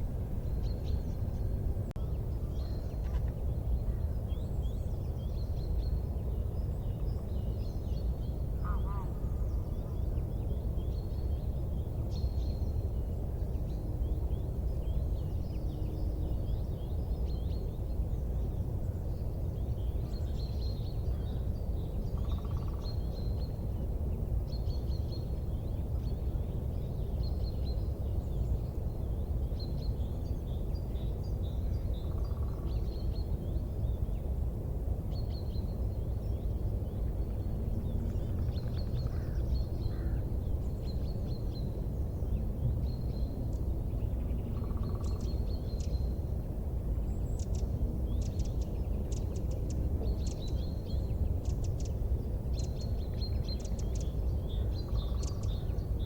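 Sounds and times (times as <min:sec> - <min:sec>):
small birds chirping: 0:35.1 - 0:56.0.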